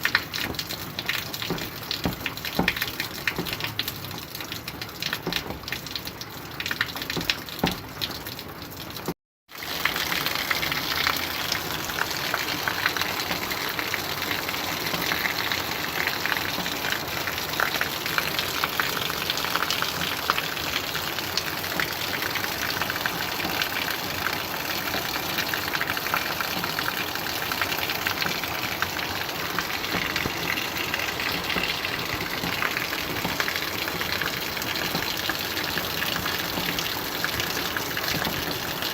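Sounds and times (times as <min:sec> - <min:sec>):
steady rainfall: 0:00.0 - 0:38.9
drip ticks: 0:00.1 - 0:08.4.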